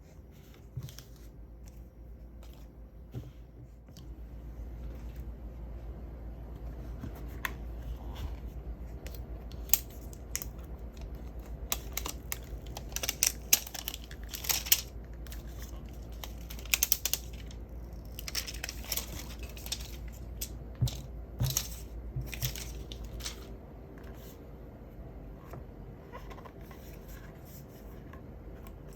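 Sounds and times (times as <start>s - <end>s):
steady low hum: 0.0s - 28.9s
packaging crinkling and tearing: 9.5s - 23.5s.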